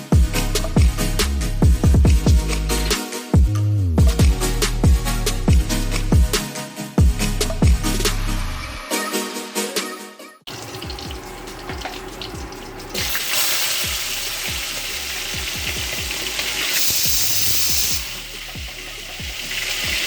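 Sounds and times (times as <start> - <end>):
music with low beat: 0.0 - 8.4, 10.8 - 20.0
chicken frying in hot oil: 10.5 - 20.0.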